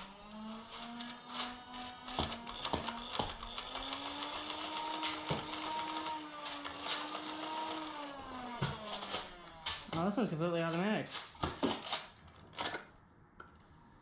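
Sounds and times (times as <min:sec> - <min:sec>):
small electric motor whirring: 0:00.0 - 0:10.0
sharp clicks and knocks: 0:01.9 - 0:07.9.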